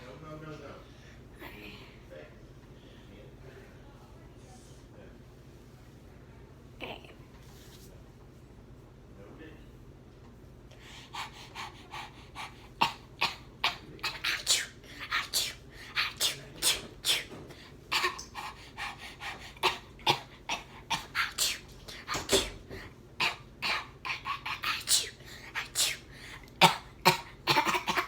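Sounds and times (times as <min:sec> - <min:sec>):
person coughing and huffing: 0:19.3 - 0:28.0.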